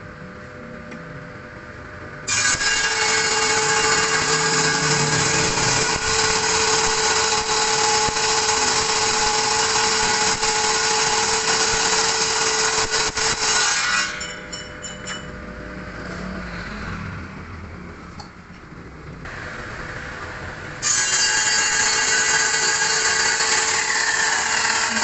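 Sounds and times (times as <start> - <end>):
power tool whining on wood: 2.3 - 14.2, 20.8 - 25.0.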